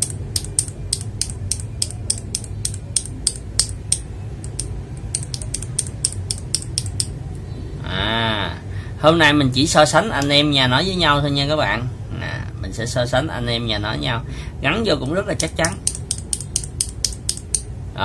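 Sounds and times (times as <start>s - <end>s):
keyboard switch clacking: 0.0s - 7.2s, 15.4s - 17.7s.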